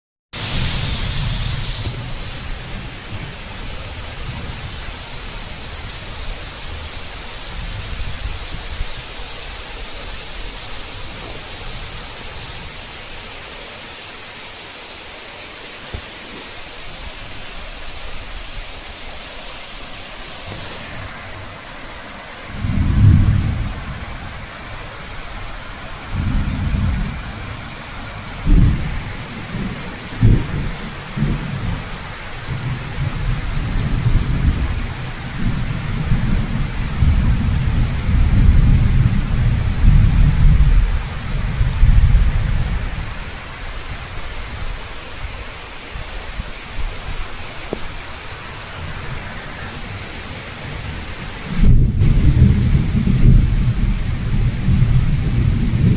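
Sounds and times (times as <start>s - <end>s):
heavy rain falling: 0.3s - 55.9s
thunder rumbling: 0.4s - 13.2s, 22.2s - 43.4s, 48.6s - 55.9s
sharp thunder crack: 22.6s - 24.0s, 28.4s - 31.7s, 51.5s - 55.9s.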